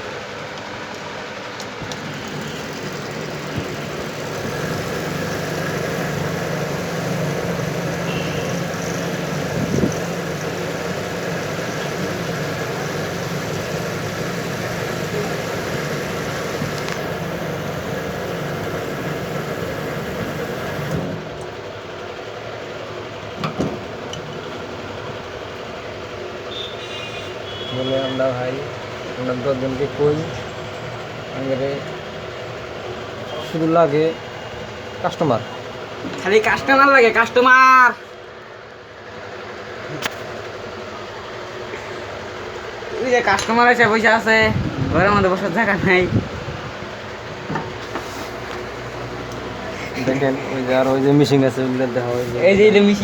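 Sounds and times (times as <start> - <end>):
mechanical hum with low drone: 1.5 - 27.7.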